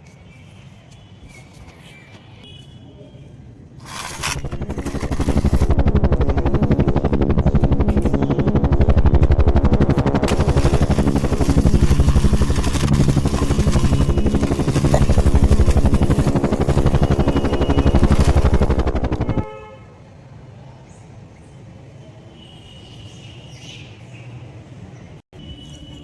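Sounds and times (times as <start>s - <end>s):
rapid pulsing toy engine noise: 3.8s - 19.5s
steady electronic tones: 3.9s - 19.5s.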